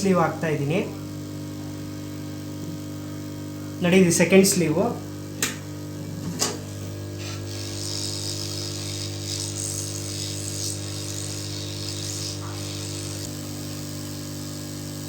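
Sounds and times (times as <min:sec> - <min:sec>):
heat gun motor hum: 0:04.5 - 0:15.0.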